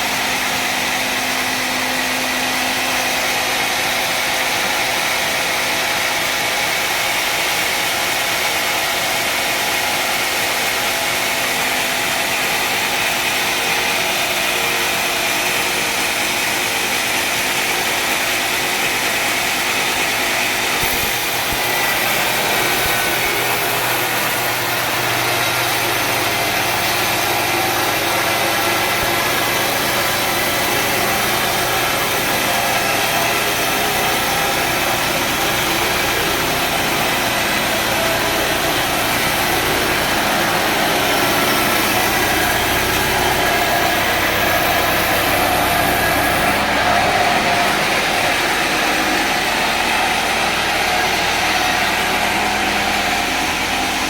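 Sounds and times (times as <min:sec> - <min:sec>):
lower steady engine note: 0:00.0 - 0:54.0
sawmill engine running: 0:00.0 - 0:54.0.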